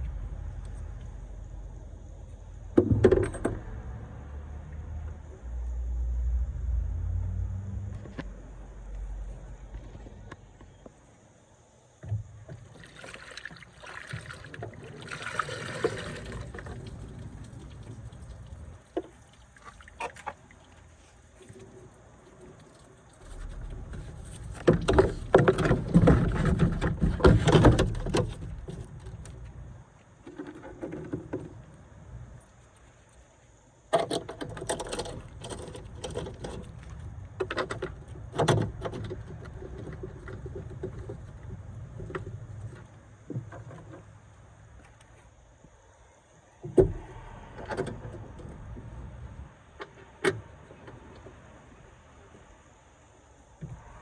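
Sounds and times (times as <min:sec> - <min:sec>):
hard objects clunking and scraping: 0:23.3 - 0:29.3.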